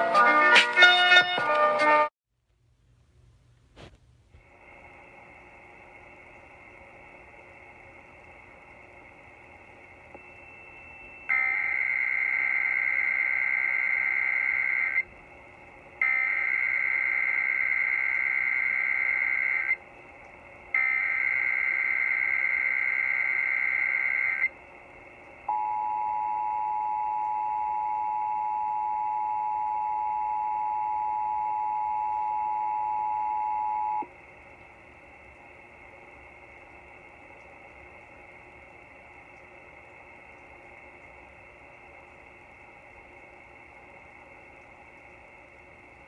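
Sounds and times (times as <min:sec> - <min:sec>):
digital data tone warble: 0:10.3 - 0:15.0.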